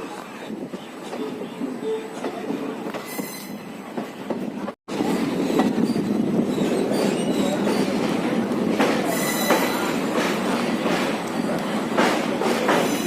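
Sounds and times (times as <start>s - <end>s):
train wheels rumbling on rails: 0.1s - 13.0s
high wheel squeal: 3.0s - 3.6s.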